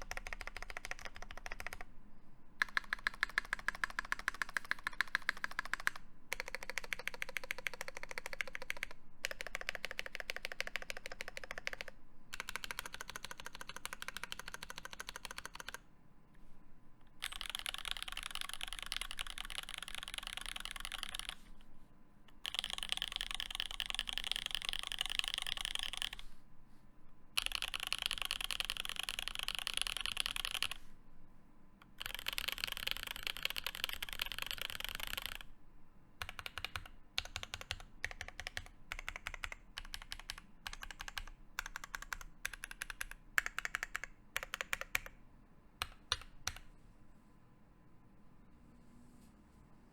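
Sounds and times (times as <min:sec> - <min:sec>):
fast typing on mechanical keyboard: 0:00.0 - 0:01.9, 0:02.6 - 0:15.8, 0:17.2 - 0:21.4, 0:22.4 - 0:26.3, 0:27.4 - 0:30.8, 0:31.8 - 0:35.5, 0:36.2 - 0:45.2, 0:45.8 - 0:46.7.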